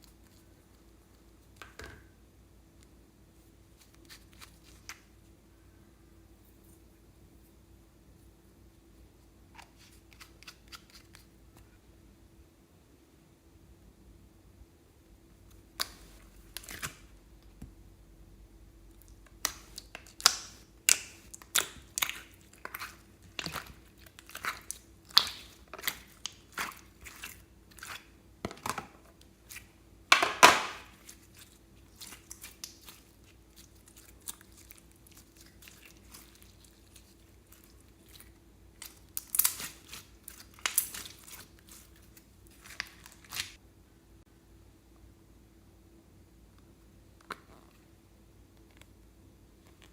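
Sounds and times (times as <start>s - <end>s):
slime squelch: 15.4s - 17.2s, 18.8s - 43.6s
slime popping and crackling: 19.1s - 28.1s, 29.4s - 43.6s.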